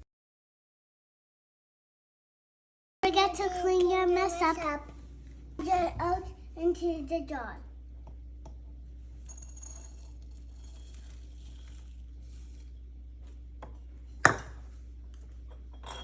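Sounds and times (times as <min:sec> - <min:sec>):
oats rustling into a jar: 0:09.2 - 0:13.4
sharp knock on counter: 0:14.2 - 0:14.6.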